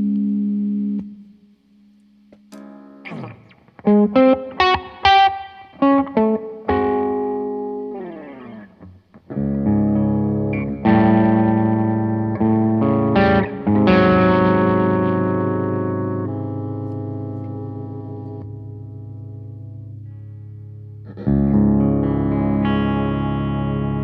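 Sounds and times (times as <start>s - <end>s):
overdriven electric guitar: 2.3s - 24.0s.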